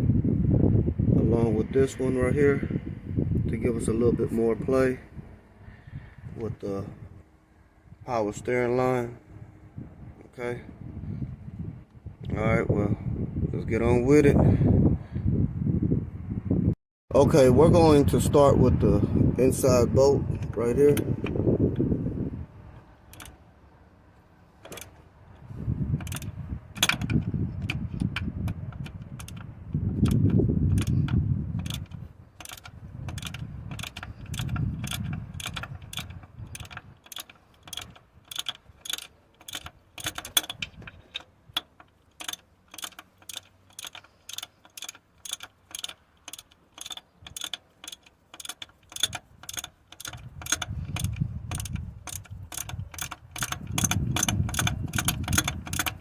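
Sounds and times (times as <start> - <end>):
low rumbles: 0.0 - 8.2, 9.1 - 56.0
hand ratchet clicking: 23.1 - 23.4, 24.6 - 25.0, 26.0 - 56.0.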